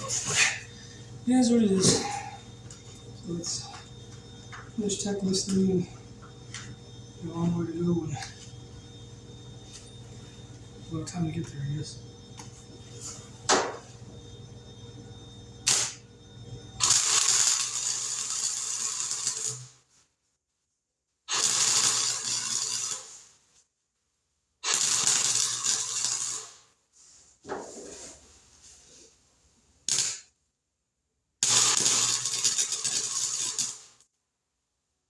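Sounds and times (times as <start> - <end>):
welder zapping: 0.0 - 19.8, 21.3 - 23.3, 24.6 - 26.7, 29.9 - 30.3, 31.4 - 34.0
crackling welds: 0.0 - 19.9, 21.3 - 23.4, 24.6 - 26.8, 29.8 - 30.3, 31.4 - 34.1.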